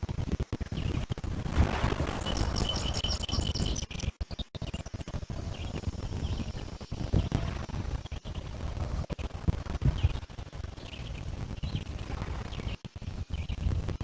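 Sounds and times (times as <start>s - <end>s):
waves lapping against stones: 1.6s - 4.0s
bird chirping: 1.9s - 4.1s.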